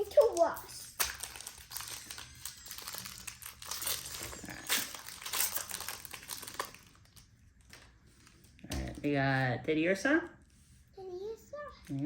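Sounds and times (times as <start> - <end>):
foil wrapper crinkling and tearing: 0.0 - 8.6.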